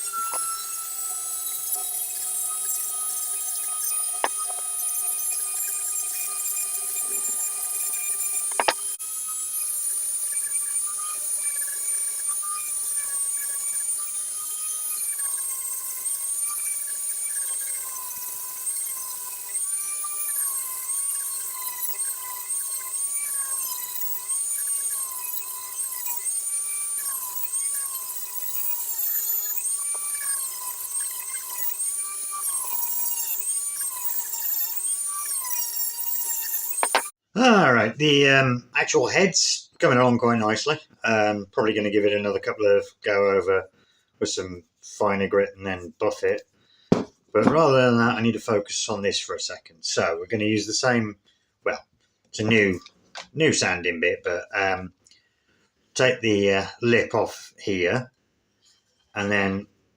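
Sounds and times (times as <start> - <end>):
rotary tool sanding metal: 0.0 - 37.2.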